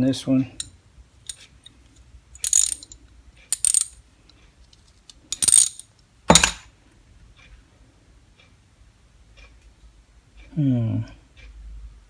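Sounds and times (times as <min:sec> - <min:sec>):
metal ratchet handles clinking: 0:02.4 - 0:04.0, 0:05.3 - 0:06.6
tool set down with a knock: 0:06.3 - 0:06.6.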